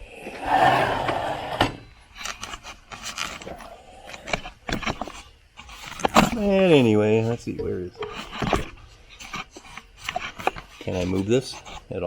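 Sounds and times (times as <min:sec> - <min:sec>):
rubbing scrape: 0:00.2 - 0:12.0
irregular knocks and clicks: 0:02.2 - 0:06.4.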